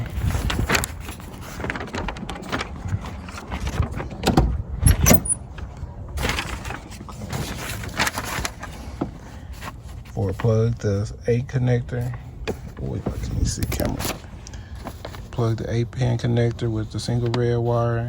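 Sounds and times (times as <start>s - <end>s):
hands handling wiring connectors: 0.0s - 10.8s, 12.0s - 15.5s.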